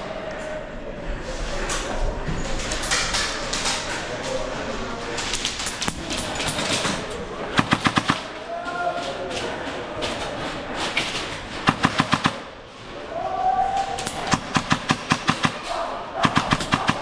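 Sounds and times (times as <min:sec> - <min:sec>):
airsoft guns firing bursts: 0:05.8 - 0:08.4, 0:10.0 - 0:12.6, 0:14.0 - 0:17.0.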